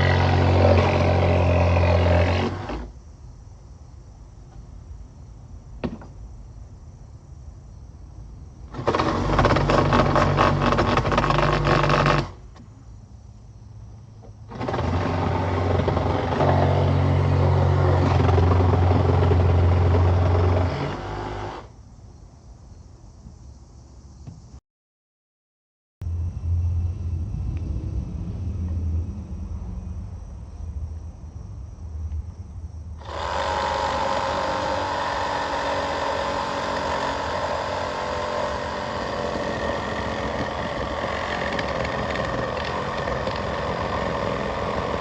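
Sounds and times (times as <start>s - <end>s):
reciprocating saw buzzing: 0.0s - 3.0s, 14.5s - 21.8s, 33.0s - 45.0s.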